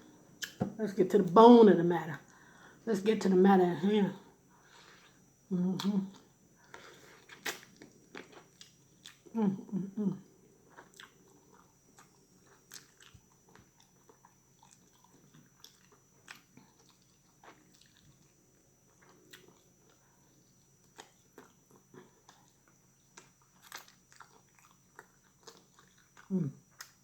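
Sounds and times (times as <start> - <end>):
chewing and lip-smacking: 5.8 - 9.3, 10.7 - 20.0, 20.8 - 27.0.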